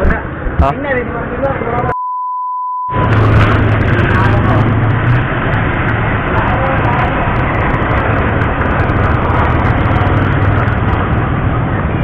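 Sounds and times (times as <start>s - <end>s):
traffic noise: 0.0s - 2.0s, 2.9s - 12.0s
low engine hum: 2.9s - 12.0s.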